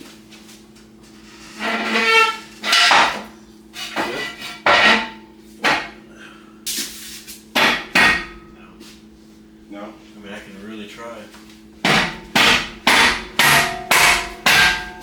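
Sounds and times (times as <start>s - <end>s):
hammer striking metal: 7.6s - 8.4s, 11.8s - 15.0s.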